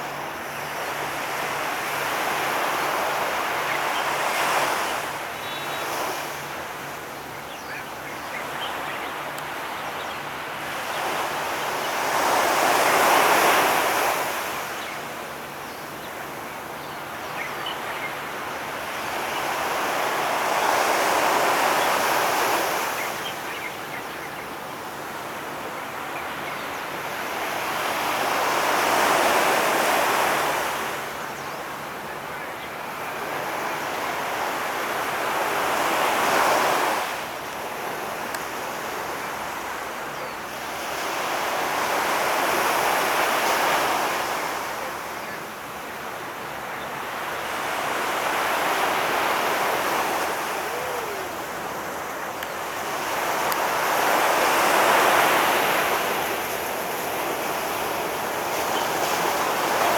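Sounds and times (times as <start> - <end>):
waves washing onto shore: 32.9 - 59.9.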